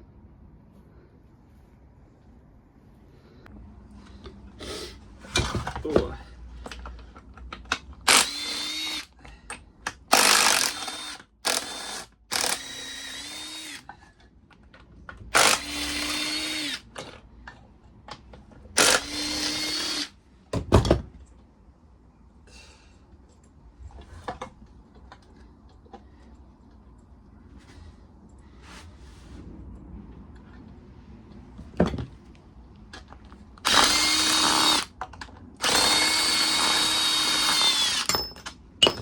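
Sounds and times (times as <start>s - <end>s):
power drill whining: 8.1s - 9.1s, 10.1s - 13.8s, 15.3s - 16.8s, 18.8s - 20.1s, 33.6s - 34.9s, 35.6s - 38.2s.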